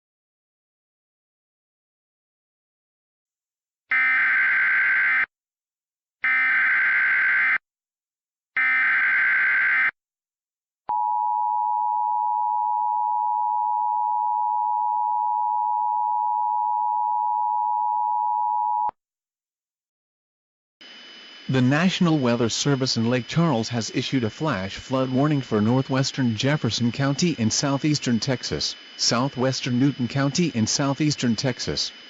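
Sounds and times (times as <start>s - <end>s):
digital header bursts: 20.8s - 32.0s.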